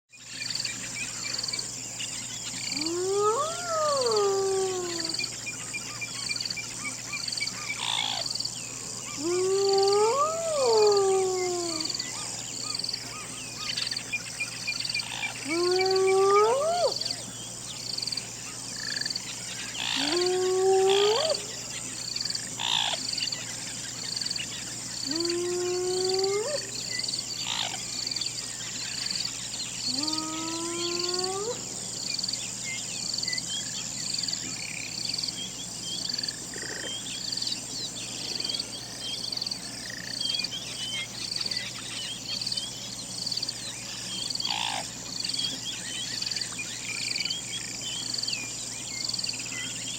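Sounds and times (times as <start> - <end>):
night insects chorus: 0.1 - 49.9
hyena whooping: 2.7 - 5.2, 9.2 - 12.1, 15.4 - 17.2, 19.8 - 21.6, 25.0 - 26.8.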